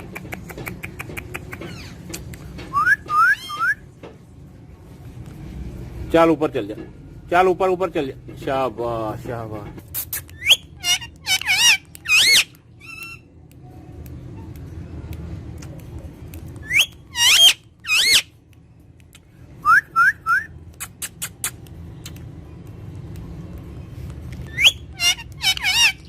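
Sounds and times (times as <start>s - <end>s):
parrot whistled calls: 2.7s - 3.8s, 10.2s - 13.2s, 16.6s - 18.3s, 24.4s - 26.0s
parrot rising chirps: 10.2s - 13.3s, 16.6s - 18.3s, 24.5s - 26.0s.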